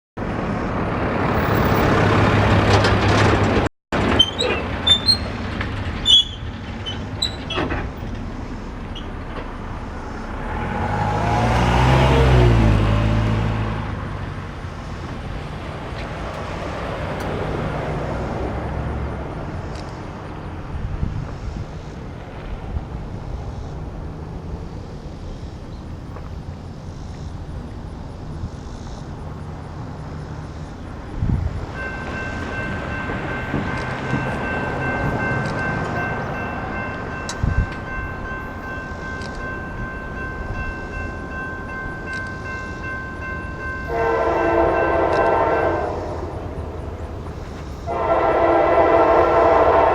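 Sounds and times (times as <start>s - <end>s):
freight train passing: 0.2s - 49.9s
train rolling noise: 0.2s - 49.9s
sharp clicks: 19.7s - 20.1s.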